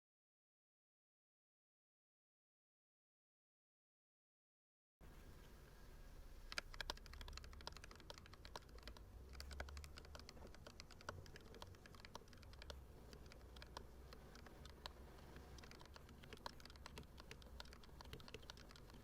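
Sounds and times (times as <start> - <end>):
mechanical keyboard typing: 6.5 - 19.0.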